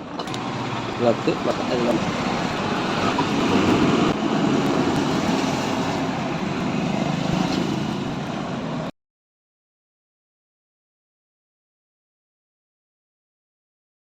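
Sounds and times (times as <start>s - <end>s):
traffic noise: 0.0s - 8.9s
vehicle engine: 0.0s - 8.9s.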